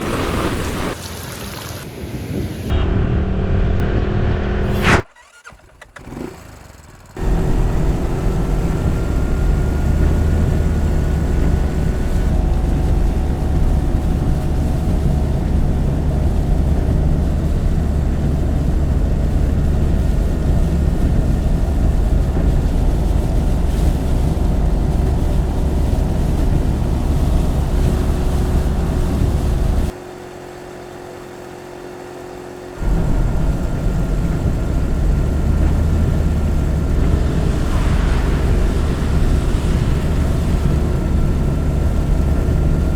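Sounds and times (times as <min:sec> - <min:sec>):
vehicle engine and road noise: 0:00.0 - 0:42.9
faint whine: 0:07.2 - 0:29.9, 0:32.8 - 0:42.9.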